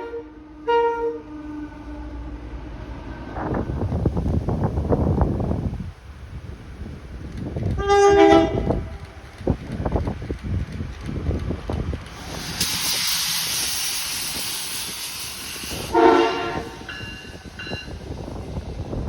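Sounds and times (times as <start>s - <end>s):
train horn blasts: 0.0s - 2.4s, 7.8s - 8.9s, 15.6s - 17.9s
train rumbling over rails: 0.0s - 19.0s
steady hiss: 11.9s - 19.0s.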